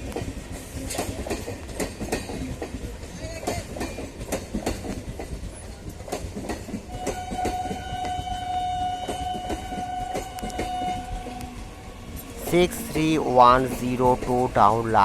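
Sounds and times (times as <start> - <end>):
train wheels clattering over rail joints: 0.0 - 11.4
train horn long note: 6.9 - 14.8.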